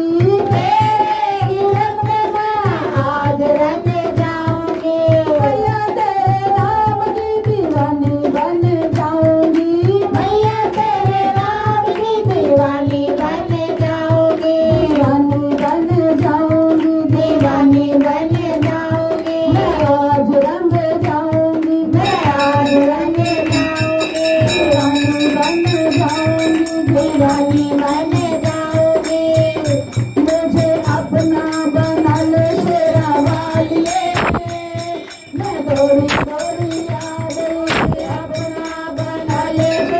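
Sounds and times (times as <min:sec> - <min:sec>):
hand drum beat: 0:00.0 - 0:39.9
bright jingling: 0:22.0 - 0:39.9
held instrumental melody: 0:22.0 - 0:39.9.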